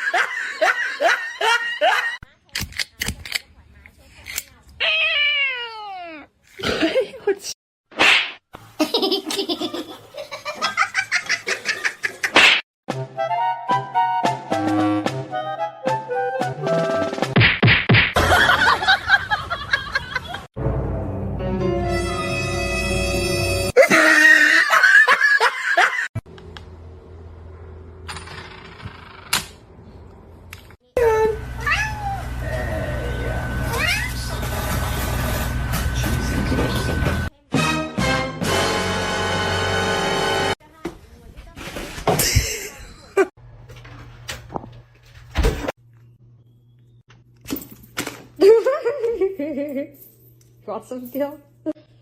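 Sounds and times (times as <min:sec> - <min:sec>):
loud laughter: 0:00.0 - 0:02.2, 0:18.2 - 0:20.5, 0:23.8 - 0:26.1
person laughing hard: 0:23.8 - 0:26.1.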